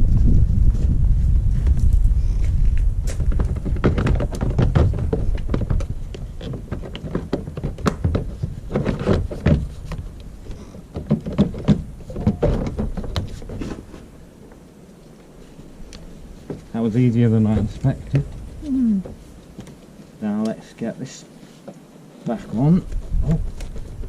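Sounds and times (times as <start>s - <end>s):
low rumble: 0.0s - 3.8s
clicks and knocks of car parts: 10.9s - 13.8s.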